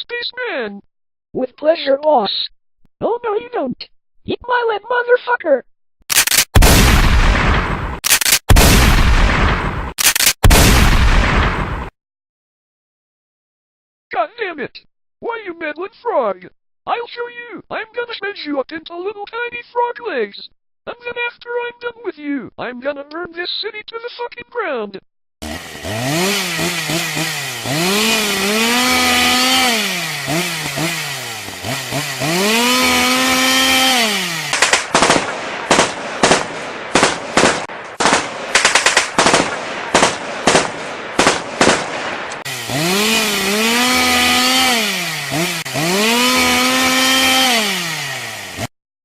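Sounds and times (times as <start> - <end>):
chainsaw revving: 25.4 - 35.0, 42.4 - 48.7
rapid sharp bangs: 34.2 - 42.5.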